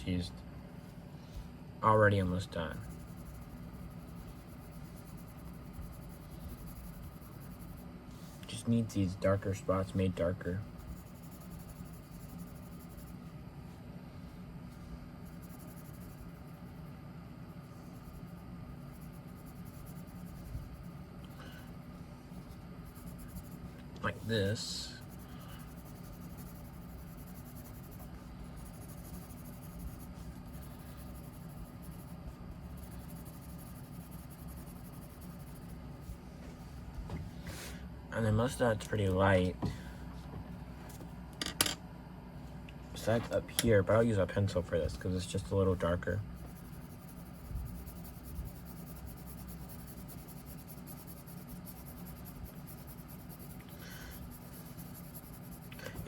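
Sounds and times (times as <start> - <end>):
pencil shading on paper: 2.7 - 8.4, 10.6 - 13.3, 14.7 - 36.2, 43.7 - 56.0.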